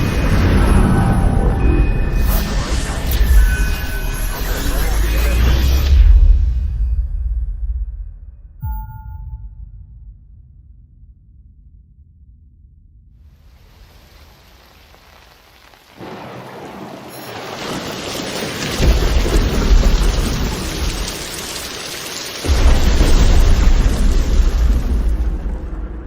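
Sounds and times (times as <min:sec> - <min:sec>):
rain hiss: 0:13.2 - 0:26.0
thunder rolling: 0:13.8 - 0:26.0.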